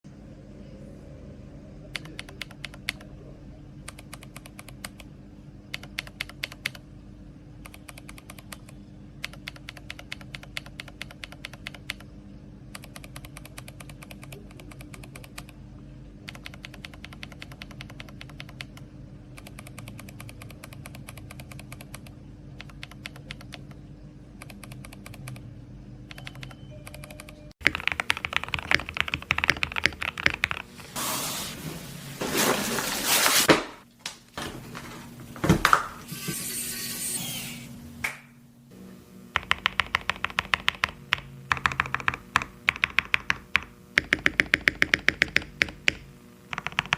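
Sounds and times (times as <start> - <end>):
typing on mechanical keyboard: 2.0 - 3.1, 3.9 - 5.1, 5.7 - 6.8, 7.6 - 12.1, 12.8 - 15.6, 16.3 - 18.8, 19.4 - 23.8, 26.1 - 30.7, 39.4 - 46.9.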